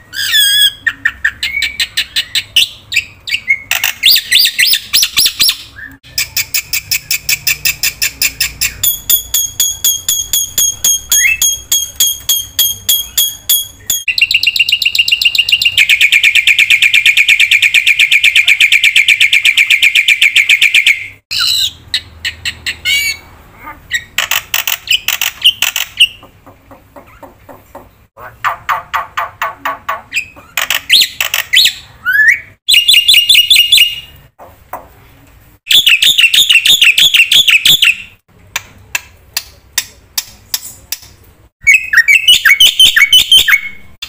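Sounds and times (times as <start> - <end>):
bird chirping: 0.0 - 34.2, 41.6 - 43.9.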